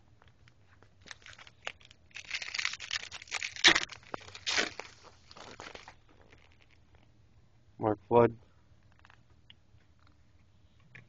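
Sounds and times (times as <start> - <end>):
plastic packaging rustling: 1.0 - 6.8.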